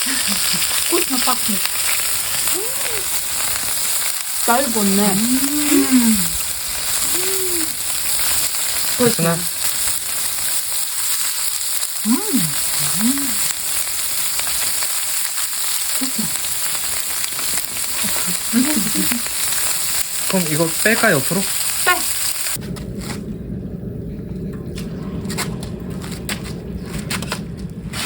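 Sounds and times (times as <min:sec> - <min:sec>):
meat sizzling on griddle: 0:00.0 - 0:22.6
short voice sounds: 0:02.5 - 0:03.1, 0:05.3 - 0:06.4, 0:07.0 - 0:07.8, 0:12.0 - 0:13.5.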